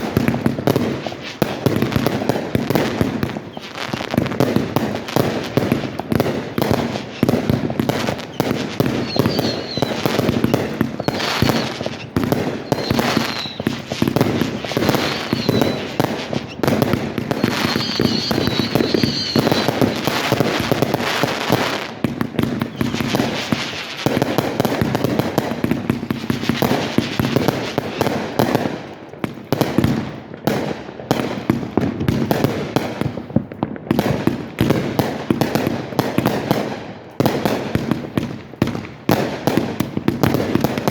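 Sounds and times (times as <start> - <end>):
fireworks whistles: 0.0 - 28.7
fireworks bangs and crackles: 0.0 - 40.9.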